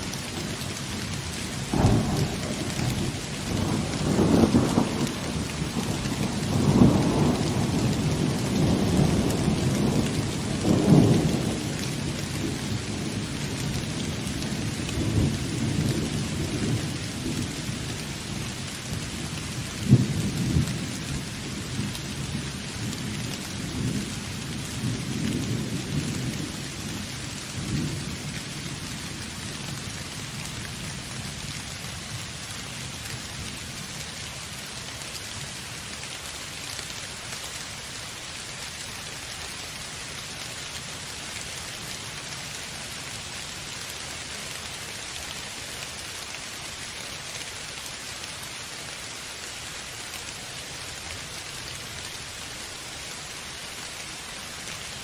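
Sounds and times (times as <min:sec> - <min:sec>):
heavy rain: 0:00.0 - 0:55.0.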